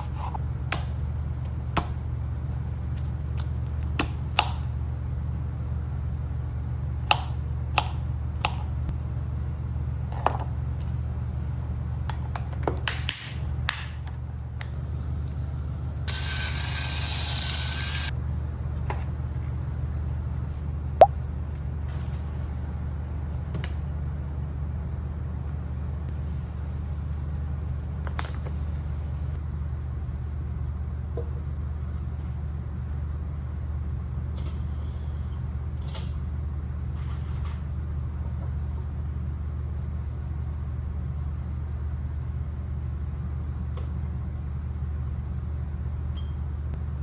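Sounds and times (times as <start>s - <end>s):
hiss: 15.2s - 18.1s, 26.1s - 27.2s.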